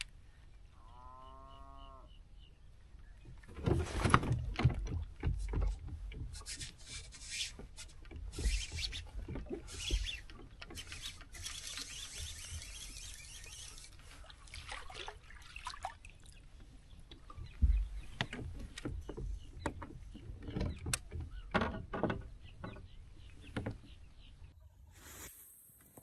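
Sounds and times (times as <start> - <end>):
rubbing and scraping: 5.4 - 14.2
water hissing and splashing: 10.8 - 14.0.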